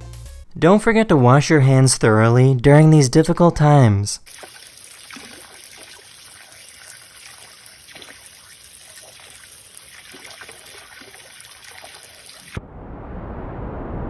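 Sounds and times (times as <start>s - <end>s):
water running from a tap: 4.3s - 12.6s.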